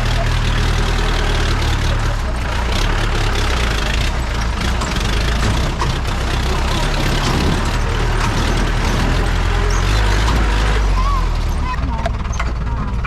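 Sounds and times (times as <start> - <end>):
jeep engine rumbling: 0.0 - 13.0
rattling: 0.0 - 13.0
road noise: 0.0 - 13.0.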